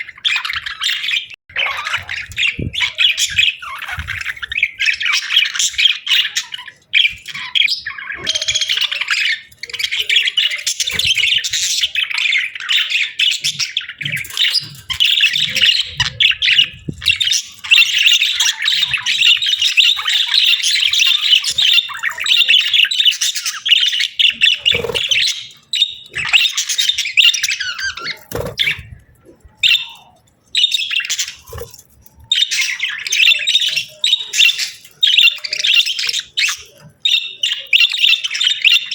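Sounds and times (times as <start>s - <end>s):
bird squawks: 0.0s - 38.9s
budgerigars chattering and warbling: 0.0s - 38.9s.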